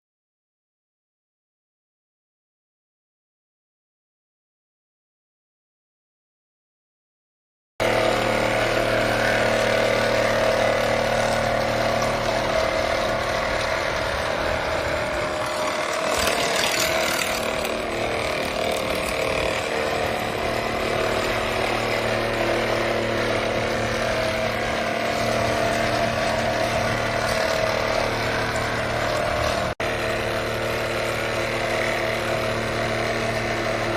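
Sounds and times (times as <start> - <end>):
floor scraper running: 7.8 - 33.9.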